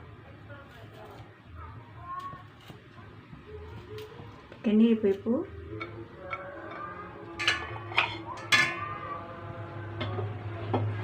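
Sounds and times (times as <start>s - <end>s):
metal pot clinking and clanking: 5.7s - 9.0s.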